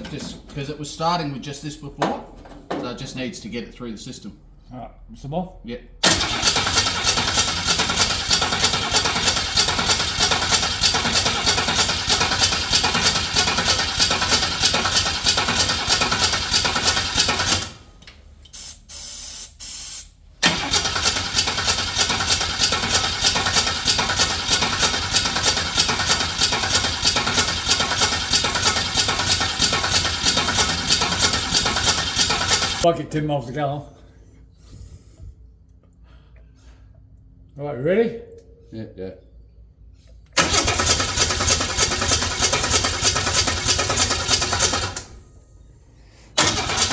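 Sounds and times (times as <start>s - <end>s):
car engine cranking on starter: 6.0s - 18.0s, 20.4s - 32.8s, 40.4s - 45.4s, 46.3s - 46.9s.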